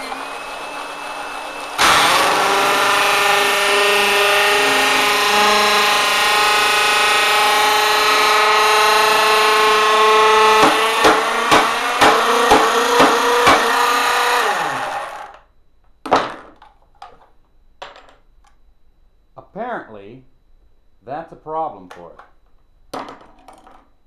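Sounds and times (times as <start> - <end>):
electric motor whining: 0.0 - 15.4.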